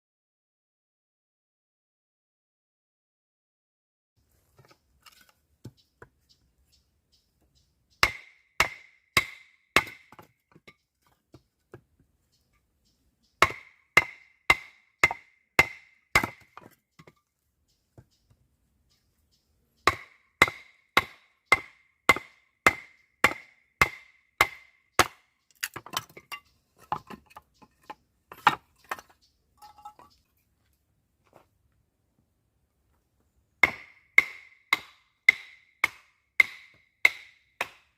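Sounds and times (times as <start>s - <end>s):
wood being chopped: 8.0s - 10.7s, 13.4s - 17.1s, 19.8s - 27.2s, 33.6s - 37.9s.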